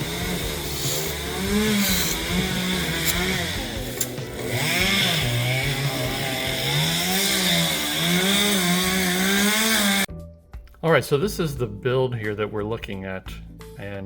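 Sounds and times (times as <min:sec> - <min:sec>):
chainsaw revving in a cut: 0:00.0 - 0:10.1.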